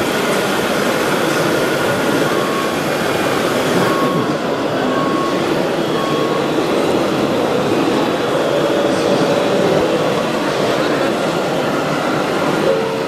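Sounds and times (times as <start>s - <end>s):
short faint beeps: 3.8s - 6.5s.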